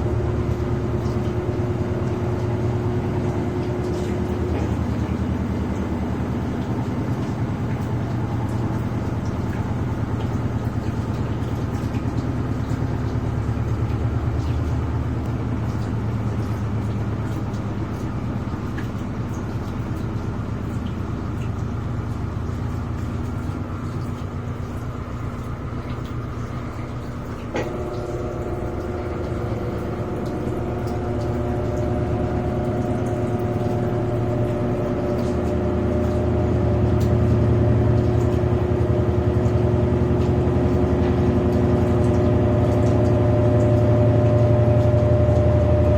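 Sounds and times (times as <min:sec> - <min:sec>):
washing machine spinning: 0:00.0 - 0:45.9
higher steady hum: 0:25.3 - 0:45.9.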